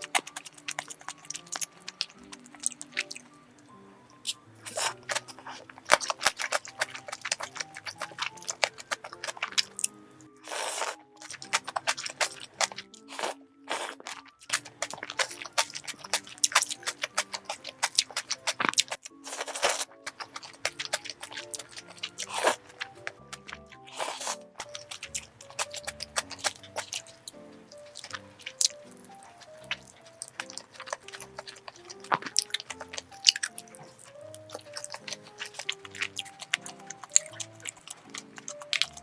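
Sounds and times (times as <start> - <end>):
crunching and chewing: 0.0 - 39.0
soft background music: 0.0 - 39.0.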